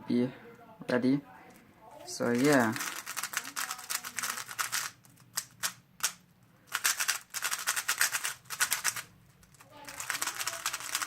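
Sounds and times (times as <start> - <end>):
plastic puzzle cube clacking: 2.2 - 11.0.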